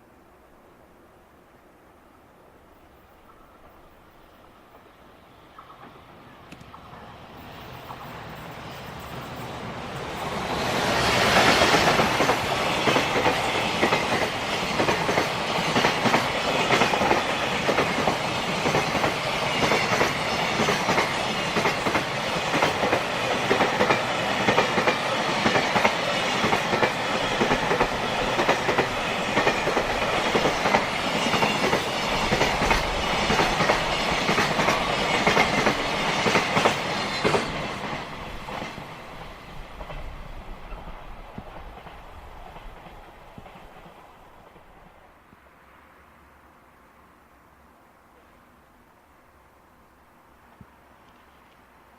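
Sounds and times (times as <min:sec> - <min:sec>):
train wheels clattering on rails: 0:03.0 - 0:45.1.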